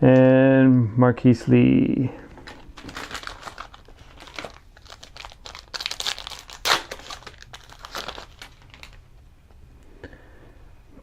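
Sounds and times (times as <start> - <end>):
trading cards crinkling: 2.3 - 9.2.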